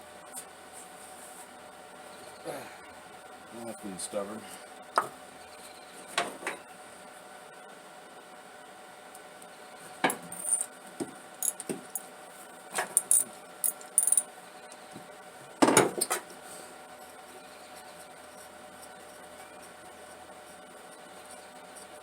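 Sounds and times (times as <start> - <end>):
socket wrench clinking: 11.4 - 12.0, 13.0 - 14.3.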